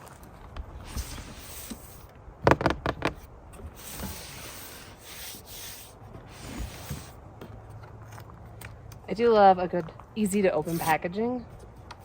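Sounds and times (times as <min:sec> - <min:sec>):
knocks and scrapes: 0:00.0 - 0:08.4.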